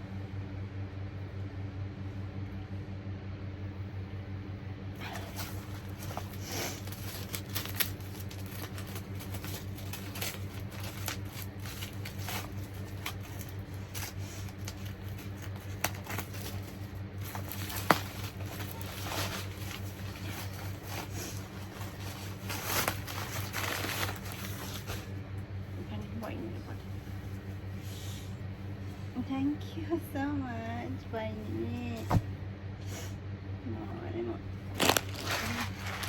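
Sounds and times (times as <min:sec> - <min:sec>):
steady low hum: 0:00.0 - 0:36.0
packaging rustling and crinkling: 0:05.0 - 0:25.2, 0:34.6 - 0:36.0.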